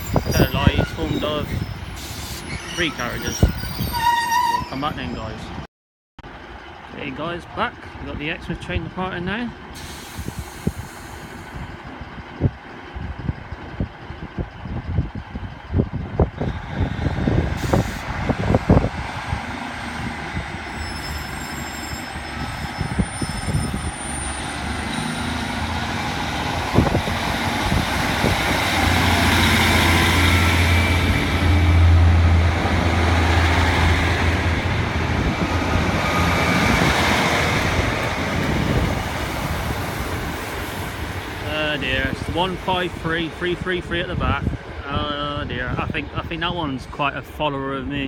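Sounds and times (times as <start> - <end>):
train diesel engines droning: 0.0 - 48.0.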